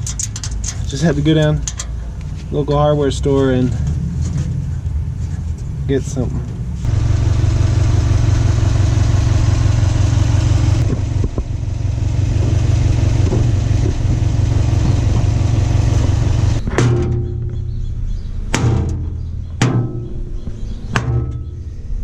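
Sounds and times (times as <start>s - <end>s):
car engine running: 6.5s - 16.7s.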